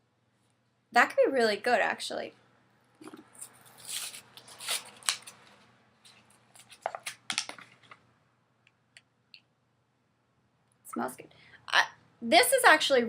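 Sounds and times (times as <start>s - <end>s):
plastic packaging crinkling: 3.1s - 8.0s.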